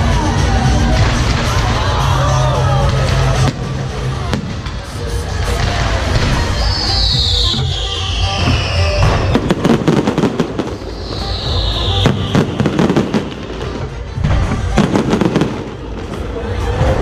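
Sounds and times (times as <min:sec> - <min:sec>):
firework crackles: 0:00.0 - 0:17.0
firework booms: 0:02.7 - 0:16.9
whistling shell: 0:06.3 - 0:13.4.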